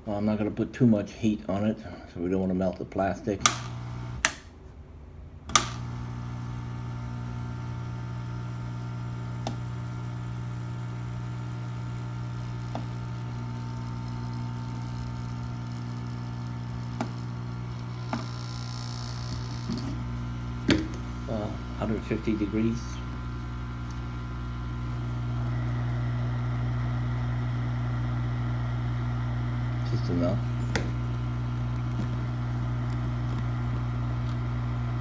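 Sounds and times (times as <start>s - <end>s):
hot air gun fan humming: 3.3s - 4.6s, 5.4s - 35.0s
hot air gun switch click: 3.4s - 4.5s, 5.5s - 6.0s.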